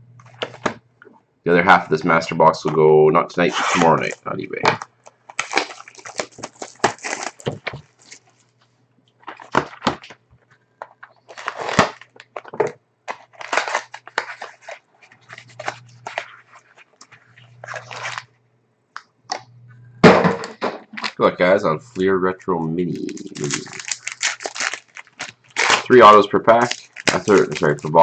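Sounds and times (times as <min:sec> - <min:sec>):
faint low electrical hum: 0:00.0 - 0:28.0
plastic wrap crinkling and tearing: 0:03.4 - 0:08.6, 0:10.8 - 0:18.3, 0:20.9 - 0:21.3, 0:22.9 - 0:28.0.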